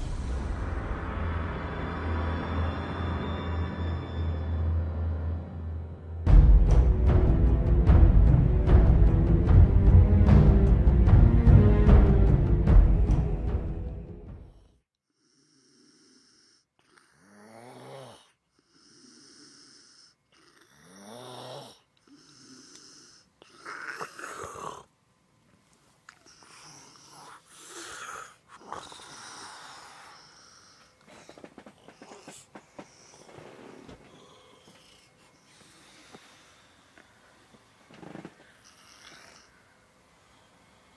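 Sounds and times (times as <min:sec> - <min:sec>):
music: 0:00.0 - 0:14.8
man snoring: 0:15.2 - 0:24.9, 0:26.2 - 0:37.0, 0:38.0 - 0:39.7.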